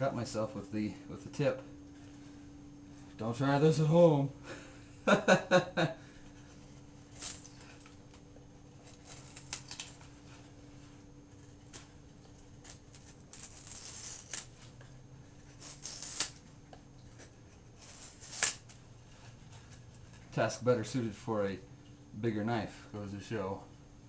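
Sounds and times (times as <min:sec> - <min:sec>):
faint steady hum: 0:00.0 - 0:24.0
knife scraping wood shavings: 0:12.6 - 0:14.8, 0:15.4 - 0:16.4, 0:17.2 - 0:20.3.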